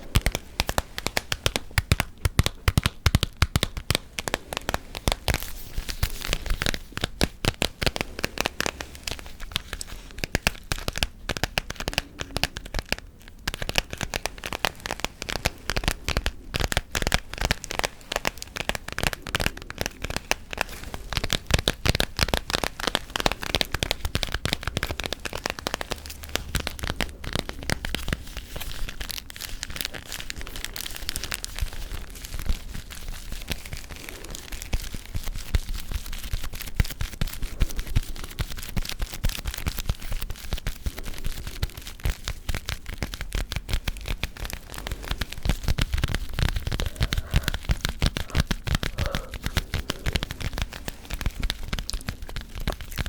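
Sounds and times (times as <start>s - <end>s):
gum chewing: 44.6s - 53.0s.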